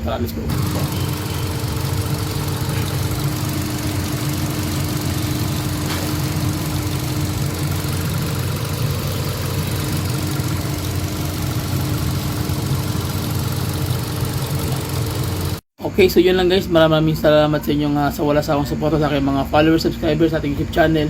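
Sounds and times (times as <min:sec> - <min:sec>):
car engine idling: 0:00.5 - 0:15.6.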